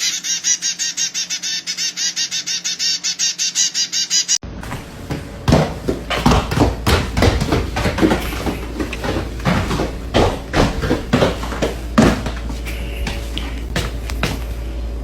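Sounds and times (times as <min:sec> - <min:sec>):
knocks and thumps: 0:04.6 - 0:14.6.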